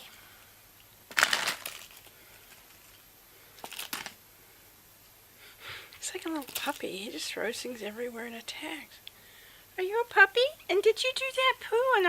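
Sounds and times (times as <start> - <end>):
plastic wrappers crinkling: 1.1 - 4.2, 6.0 - 7.0.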